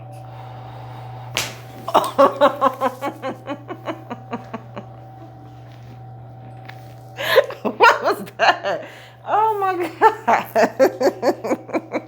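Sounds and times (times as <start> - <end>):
sharp crack of adjustment: 1.4 - 1.8
person laughing rhythmically: 1.7 - 5.5, 7.2 - 12.0.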